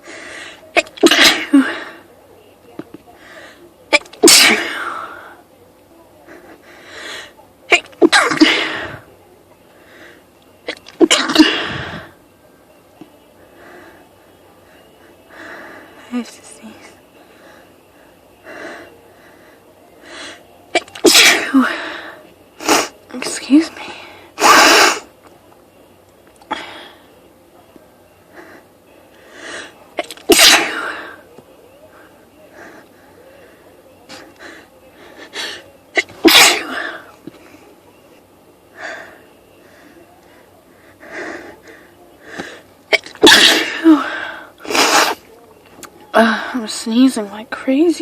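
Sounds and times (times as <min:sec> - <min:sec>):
faint breaths: 0:00.0 - 0:00.7, 0:02.9 - 0:03.8, 0:06.2 - 0:07.4, 0:08.6 - 0:10.4, 0:11.6 - 0:20.6, 0:21.6 - 0:23.0, 0:23.7 - 0:25.4, 0:26.4 - 0:30.0, 0:30.8 - 0:35.8, 0:36.7 - 0:42.9, 0:43.9 - 0:45.5
woman sneezing: 0:00.8 - 0:01.9, 0:03.9 - 0:05.0, 0:07.7 - 0:09.0, 0:10.7 - 0:12.0, 0:20.7 - 0:21.8, 0:24.4 - 0:25.0, 0:30.0 - 0:31.1, 0:35.4 - 0:37.1, 0:42.9 - 0:45.2.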